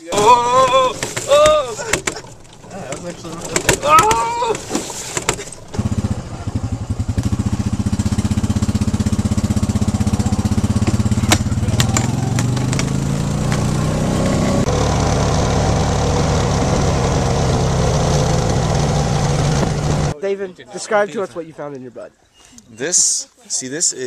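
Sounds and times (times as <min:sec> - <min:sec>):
small petrol engine running: 0:00.1 - 0:20.2.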